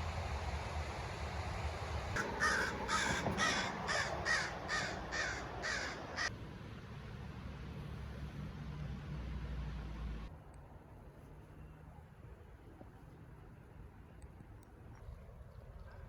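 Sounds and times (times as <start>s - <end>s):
crow cawing: 2.2s - 6.3s.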